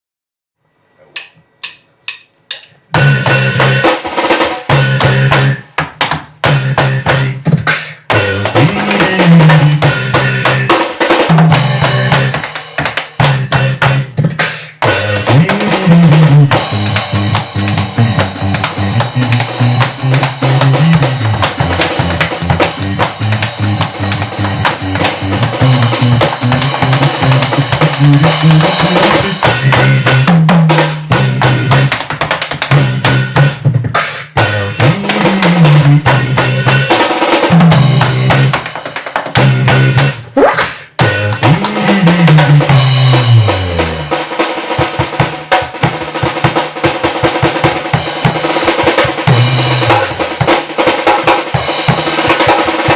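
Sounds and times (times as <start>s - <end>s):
beatbox: 1.0s - 52.9s
drum kit: 1.1s - 52.9s
tap dance: 4.8s - 7.0s, 12.2s - 14.0s, 16.5s - 30.2s, 31.0s - 34.0s
low bass line: 16.1s - 30.4s.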